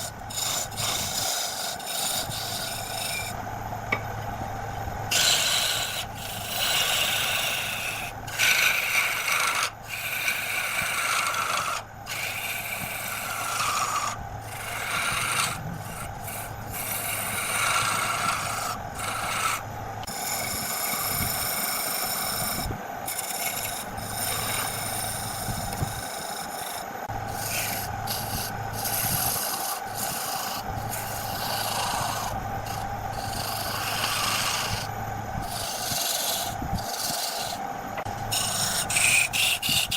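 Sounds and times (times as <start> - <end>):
turning tool scraping wood: 0.0 - 3.4, 5.1 - 39.9
wood lathe humming: 0.0 - 4.5, 5.1 - 39.9.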